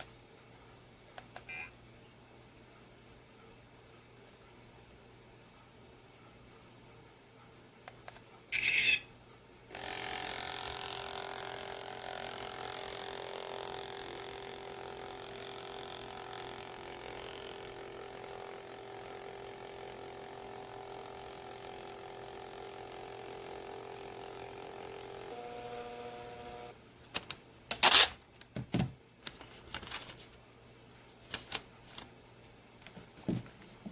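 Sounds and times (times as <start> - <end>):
thermal printer whirring: 9.7 - 26.8.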